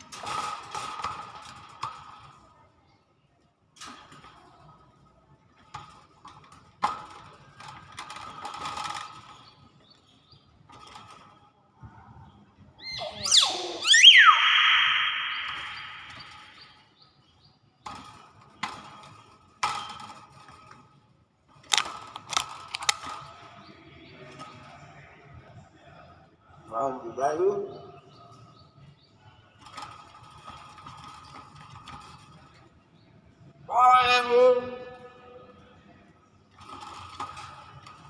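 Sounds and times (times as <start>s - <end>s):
bird rasping screech: 12.8s - 16.5s
myna falling whistles: 12.9s - 16.6s
sharp bird clicks: 13.0s - 16.6s.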